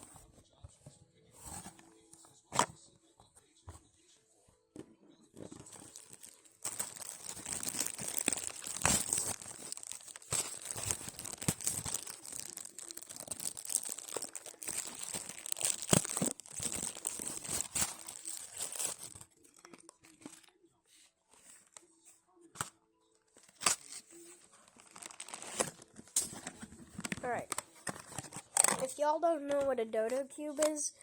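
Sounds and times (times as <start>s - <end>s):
plastic packaging crinkling: 5.4s - 20.5s, 23.4s - 29.1s.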